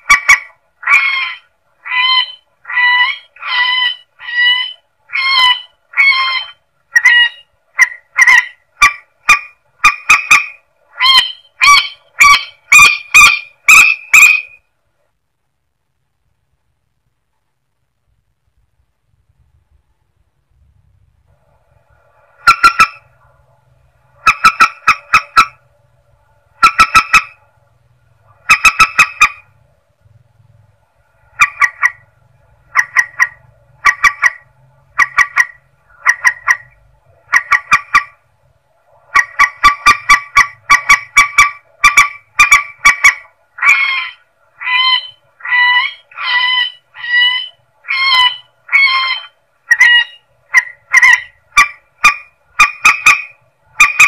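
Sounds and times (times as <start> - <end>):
rail bird harsh honking calls: 0.0 - 14.6.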